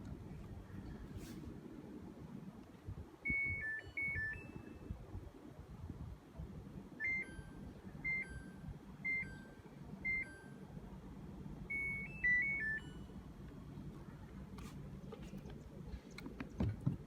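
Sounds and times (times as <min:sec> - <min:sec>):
two-note control panel beeps: 0:03.2 - 0:05.0, 0:07.0 - 0:10.7, 0:11.7 - 0:13.1.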